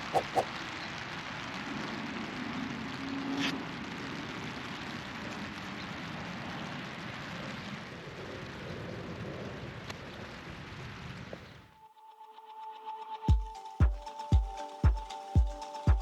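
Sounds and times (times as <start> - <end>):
light rain falling: 0.4 - 11.4.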